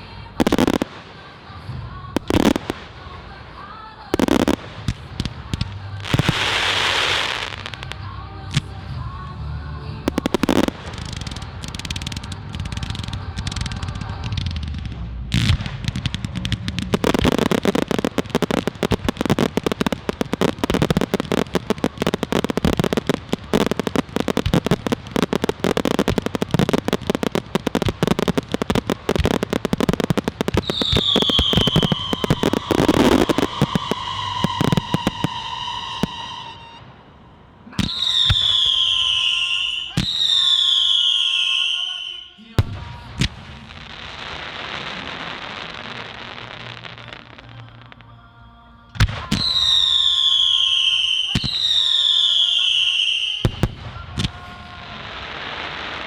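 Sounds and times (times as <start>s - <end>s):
fireworks crackling: 0.0s - 48.2s, 49.0s - 56.0s
firework bangs: 0.2s - 9.0s, 10.1s - 47.9s, 49.0s - 56.0s
high whistling tone: 30.0s - 37.1s, 37.9s - 42.4s.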